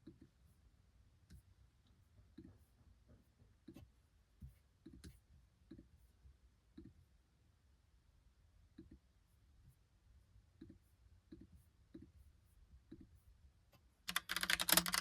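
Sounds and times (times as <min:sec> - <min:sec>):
keyboard keystrokes: 0:14.1 - 0:15.0.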